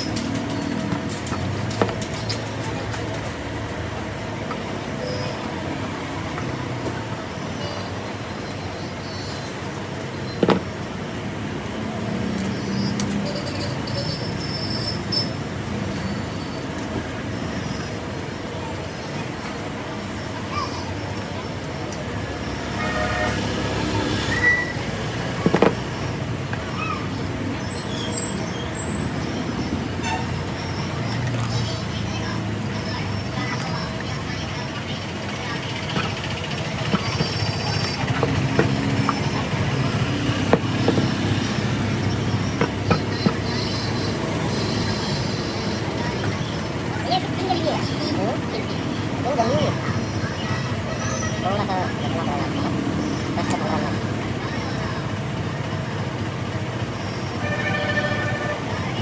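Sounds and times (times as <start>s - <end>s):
rumbling machine noise: 0.0s - 59.0s
brief squeak: 24.3s - 24.8s
air cooler motor running loudly: 33.6s - 59.0s.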